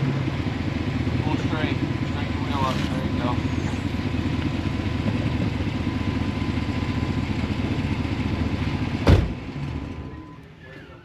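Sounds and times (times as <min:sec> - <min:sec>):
vehicle engine rumbling: 0:00.0 - 0:11.0
loud thump: 0:09.0 - 0:09.4.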